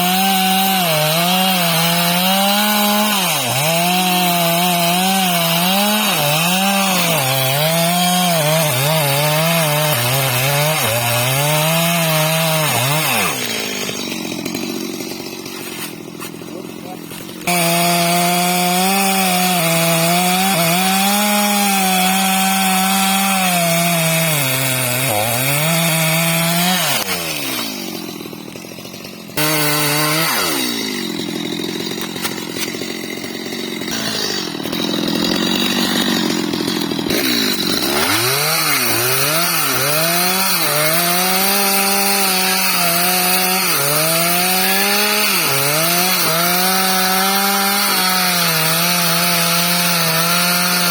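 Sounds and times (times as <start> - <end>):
chainsaw cutting into tree: 0.0 - 50.9.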